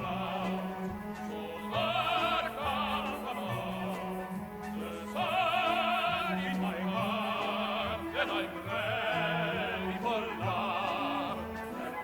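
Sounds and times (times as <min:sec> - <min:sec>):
orchestra playing: 0:00.0 - 0:12.0
tenor singing operatically: 0:00.0 - 0:12.0.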